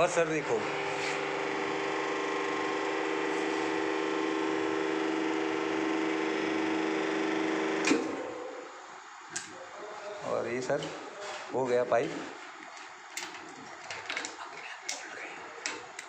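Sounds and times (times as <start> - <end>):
motor and pump hum: 0.0 - 8.9.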